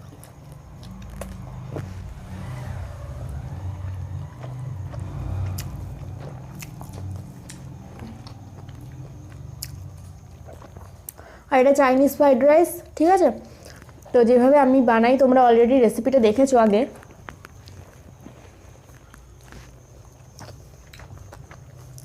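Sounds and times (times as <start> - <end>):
biting and chewing food: 0.0 - 2.2, 3.5 - 11.4, 13.4 - 14.2, 17.0 - 22.0
low rumble: 0.3 - 10.4.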